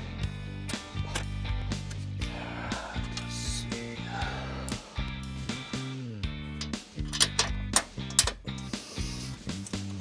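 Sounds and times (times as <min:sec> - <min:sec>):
background music with guitar and drums: 0:00.0 - 0:10.0.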